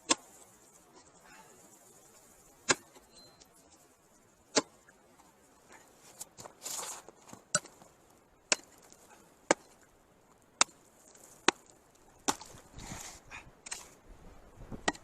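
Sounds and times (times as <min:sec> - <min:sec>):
sharp chopping strikes on ice: 0:02.7 - 0:02.9, 0:11.4 - 0:12.6
short rustle: 0:05.2 - 0:08.2, 0:10.8 - 0:14.4.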